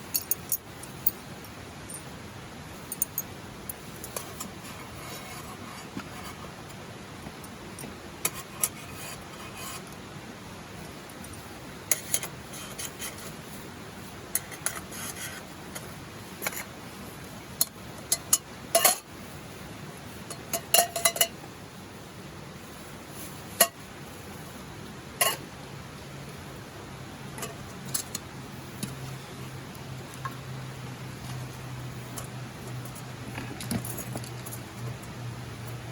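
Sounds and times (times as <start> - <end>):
background hiss: 0.0 - 35.9
metallic clinks and knocks: 0.1 - 1.2, 2.9 - 3.3, 20.3 - 21.4.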